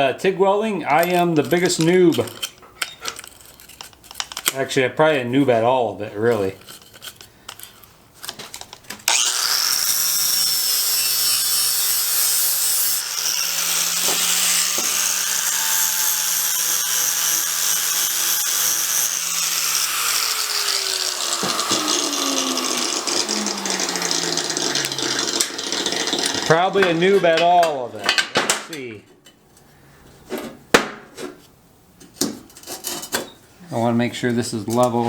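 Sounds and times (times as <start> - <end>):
power tool grinding with whine: 9.1 - 27.8.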